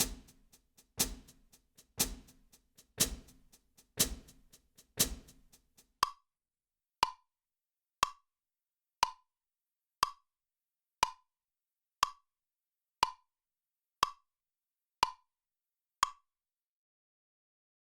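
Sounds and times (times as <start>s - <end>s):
clock ticking: 0.0s - 6.2s.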